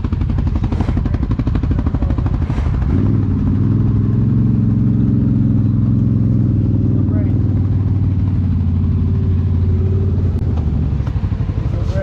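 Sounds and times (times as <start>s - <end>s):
atv engine revving: 0.0s - 12.0s.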